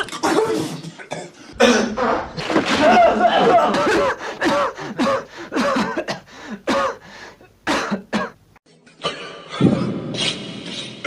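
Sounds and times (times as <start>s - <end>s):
person coughing: 1.1s - 2.0s, 3.1s - 7.0s, 7.7s - 8.4s.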